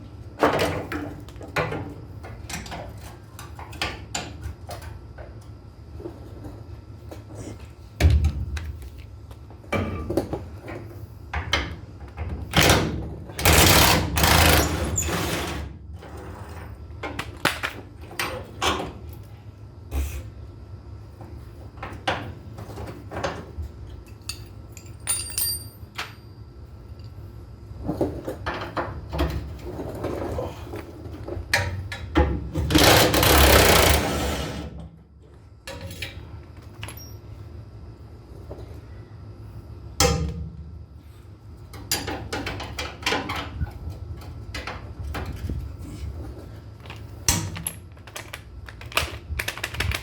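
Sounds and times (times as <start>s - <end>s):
power tool hammering: 32.7s - 34.4s.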